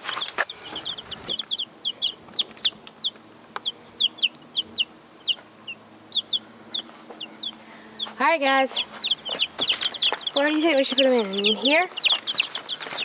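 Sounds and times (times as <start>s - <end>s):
baby chicks peeping: 0.0s - 13.0s.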